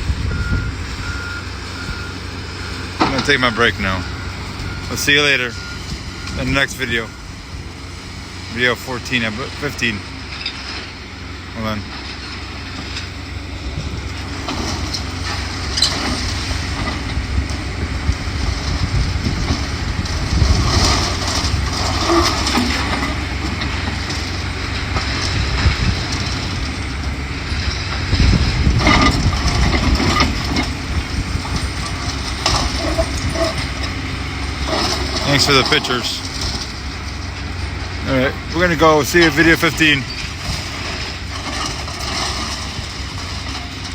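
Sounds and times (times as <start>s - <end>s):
wind buffeting microphone: 0.0s - 4.9s, 16.4s - 22.4s, 23.2s - 34.6s
excavator rumble: 0.0s - 43.9s
debris clanking and clattering: 8.5s - 43.9s.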